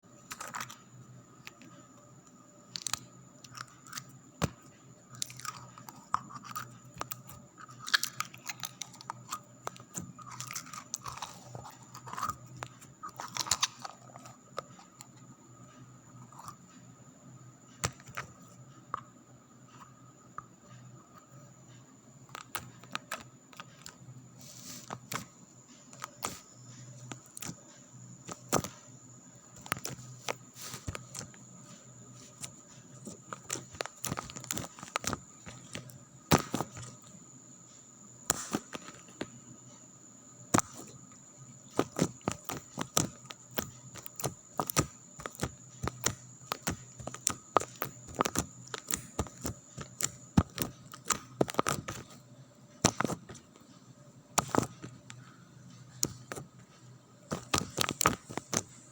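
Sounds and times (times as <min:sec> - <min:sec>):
faint steady hum: 0:00.0 - 0:58.9.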